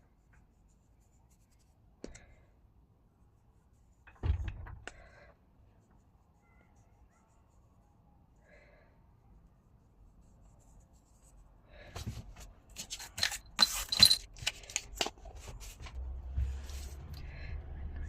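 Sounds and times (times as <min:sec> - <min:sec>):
glass pieces clinking and scraping: 0:13.0 - 0:14.5.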